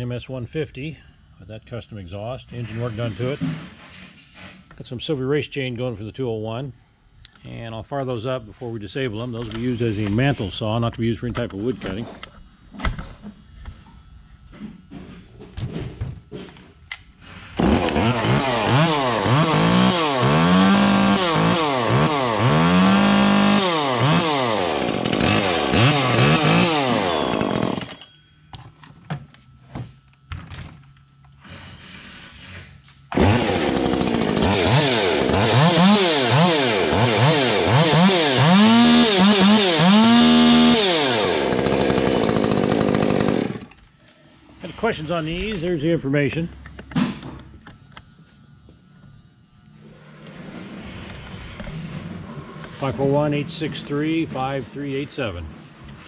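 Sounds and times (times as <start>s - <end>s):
chainsaws revving: 17.6s - 28.0s, 33.1s - 43.8s.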